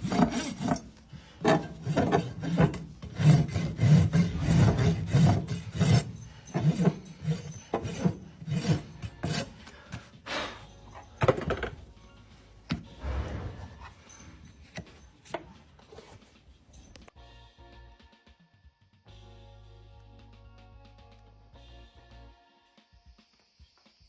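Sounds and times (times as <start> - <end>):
rasp filing hoof: 0.0 - 17.0.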